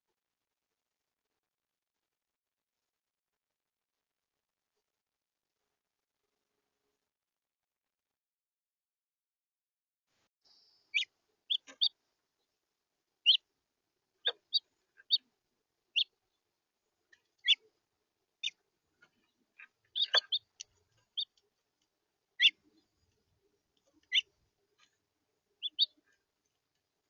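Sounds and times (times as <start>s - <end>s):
finches chirping: 10.5s - 12.0s, 14.2s - 15.3s, 17.4s - 17.7s, 18.4s - 21.4s, 22.4s - 23.1s, 24.0s - 24.3s, 25.6s - 26.1s.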